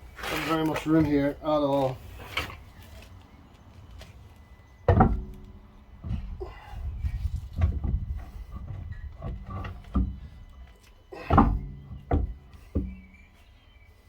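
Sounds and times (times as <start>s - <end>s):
wheel clunking against hub: 4.8s - 13.3s.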